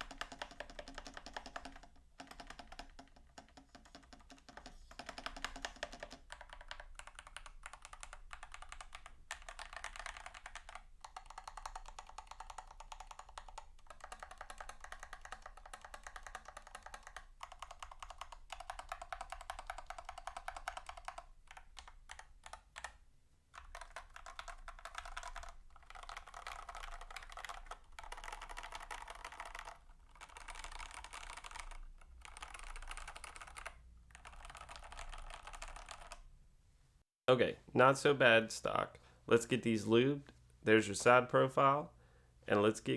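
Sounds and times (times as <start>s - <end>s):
mechanical keyboard typing: 0.0s - 23.0s, 23.6s - 36.3s.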